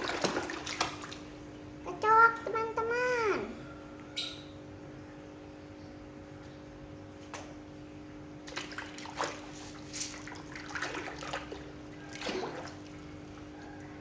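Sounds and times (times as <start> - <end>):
water splashing in a tub: 0.0 - 1.7, 7.2 - 14.0
faint hum: 0.0 - 14.0.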